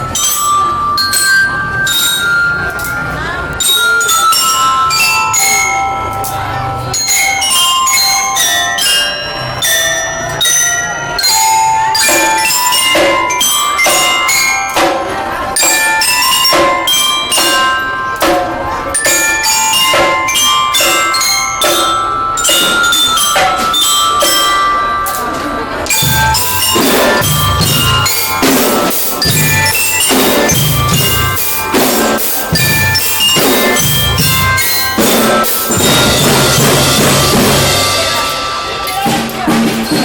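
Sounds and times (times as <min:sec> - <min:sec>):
bell-lyre melody: 0:00.0 - 0:40.0
drum strikes: 0:00.0 - 0:40.0.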